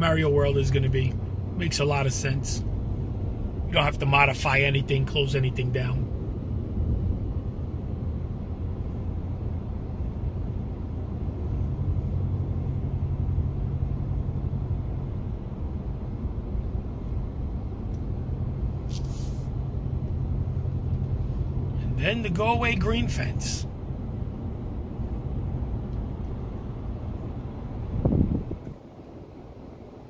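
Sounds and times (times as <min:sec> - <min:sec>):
car road and engine rumble: 0:00.0 - 0:30.0
short hiss: 0:18.9 - 0:19.6.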